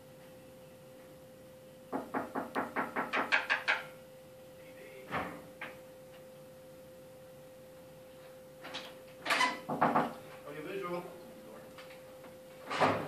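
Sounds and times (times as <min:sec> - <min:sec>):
faint steady hum: 0:00.0 - 0:13.0
sharp knocks: 0:01.9 - 0:03.9.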